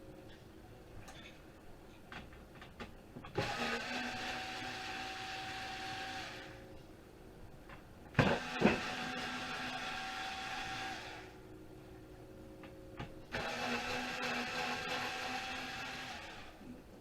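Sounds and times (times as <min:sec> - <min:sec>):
small electric motor humming: 0:08.2 - 0:11.4, 0:13.3 - 0:16.6.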